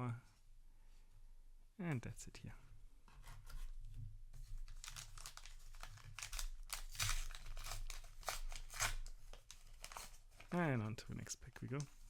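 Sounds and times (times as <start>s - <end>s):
foil wrapper crinkling: 4.6s - 10.6s.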